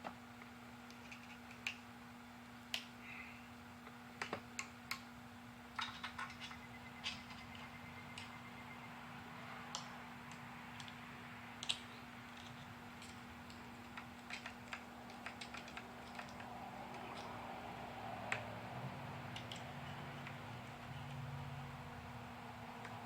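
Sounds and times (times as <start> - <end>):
steady low hum: 0.0 - 23.0
small metal parts clicking: 11.6 - 17.4.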